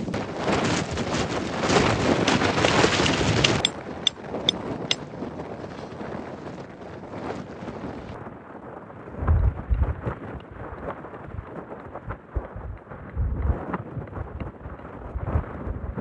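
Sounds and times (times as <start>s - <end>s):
wind gusting against microphone: 0.0s - 16.0s
sharp snaps and ticks: 2.3s - 5.0s.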